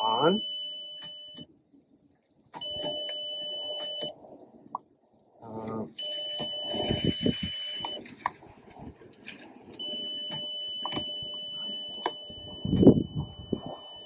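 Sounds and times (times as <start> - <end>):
high electronic warning beep: 0.0 - 1.5, 2.6 - 4.1, 5.9 - 8.1, 9.8 - 14.0.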